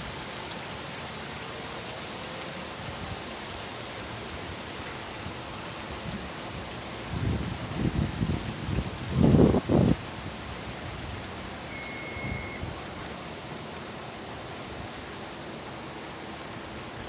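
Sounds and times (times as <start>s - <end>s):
water rushing through drainage channel: 0.0s - 17.0s
high whistle: 11.6s - 12.8s.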